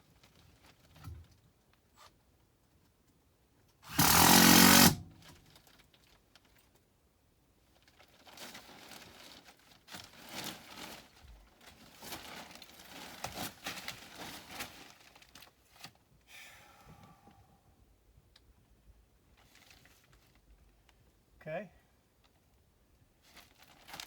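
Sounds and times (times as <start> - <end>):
crinkling and rustling handling: 0.0 - 3.8, 5.1 - 7.0, 7.6 - 16.2, 18.2 - 21.2, 22.2 - 24.0.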